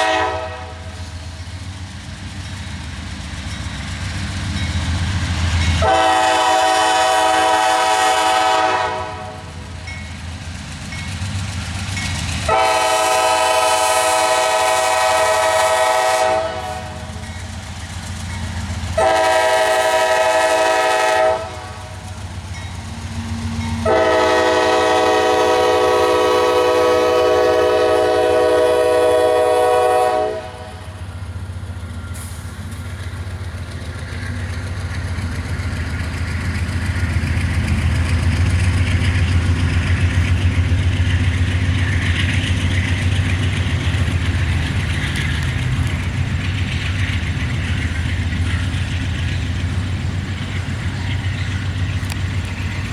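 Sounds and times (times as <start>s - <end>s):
locomotive air horn blasts: 0.0s - 1.0s, 5.8s - 9.6s, 12.5s - 17.2s, 19.0s - 22.0s, 23.8s - 31.0s
low rumble of approaching train: 0.0s - 52.9s.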